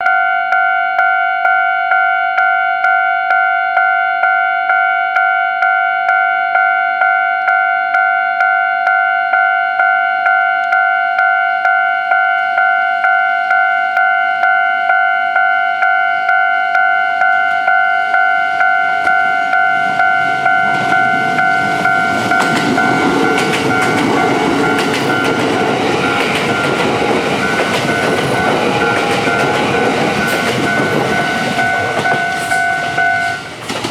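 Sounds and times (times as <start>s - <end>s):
level crossing alarm bell ringing: 0.0s - 33.6s
train passing with wheel clatter: 16.8s - 33.9s.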